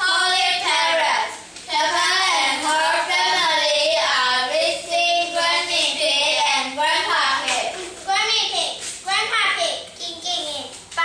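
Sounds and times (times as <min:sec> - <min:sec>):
child singing: 0:00.0 - 0:09.3.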